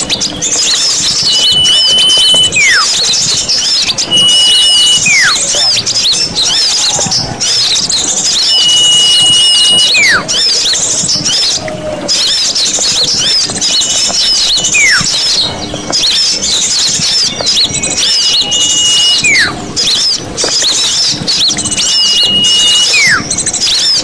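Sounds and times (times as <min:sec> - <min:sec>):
small birds chirping and scolding: 0:00.0 - 0:24.0
high falling whistle: 0:01.2 - 0:03.2, 0:04.0 - 0:05.6, 0:08.4 - 0:10.3, 0:14.6 - 0:15.1, 0:18.0 - 0:19.6, 0:21.7 - 0:23.2.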